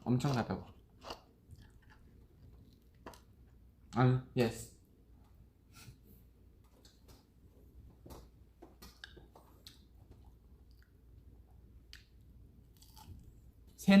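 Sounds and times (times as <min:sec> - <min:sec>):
person chewing: 0:00.2 - 0:03.5, 0:08.8 - 0:11.2, 0:11.8 - 0:13.5.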